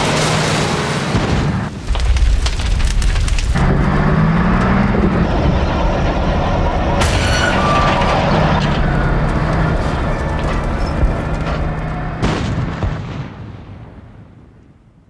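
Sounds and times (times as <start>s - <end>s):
booming explosion rumble: 1.1s - 11.3s, 12.2s - 14.6s
sharp cracks: 1.8s - 4.8s.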